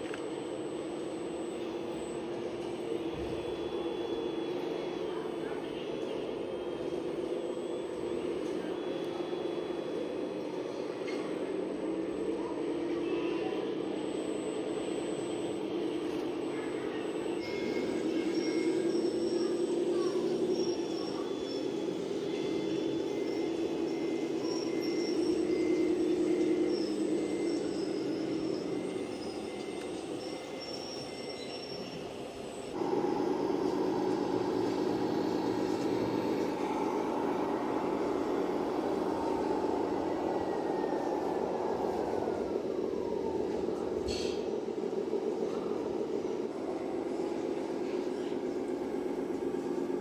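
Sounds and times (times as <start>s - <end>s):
model vehicle engine drone: 0.0s - 50.0s
electric motor and gears whining: 13.6s - 46.6s.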